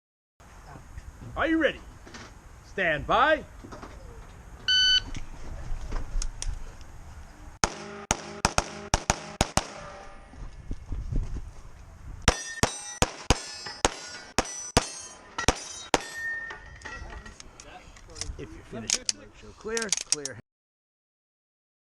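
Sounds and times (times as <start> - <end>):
rapid gunshots: 7.6 - 9.9, 12.3 - 14.9
steel plate ringing clang: 9.7 - 10.4, 12.3 - 17.2.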